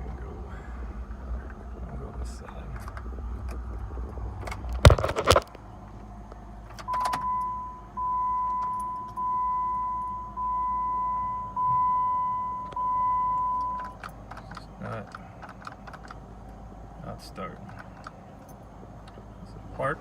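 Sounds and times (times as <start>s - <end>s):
car warning chime bongs: 6.8s - 14.2s.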